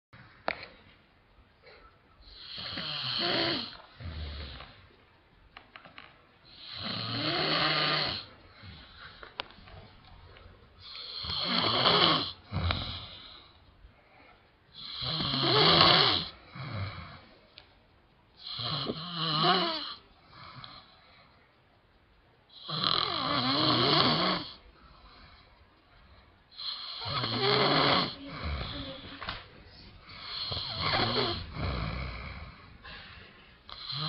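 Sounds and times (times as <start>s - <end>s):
man snoring: 2.4s - 4.7s, 6.6s - 8.9s, 10.8s - 13.4s, 14.8s - 17.3s, 18.4s - 20.9s, 22.6s - 24.6s, 26.6s - 29.2s, 30.0s - 32.7s, 33.7s - 34.0s.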